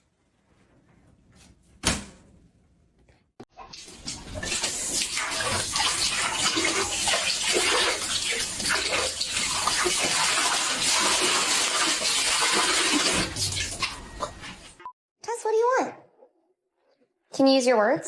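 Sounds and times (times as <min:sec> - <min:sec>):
water running into bathtub: 0:03.5 - 0:14.8.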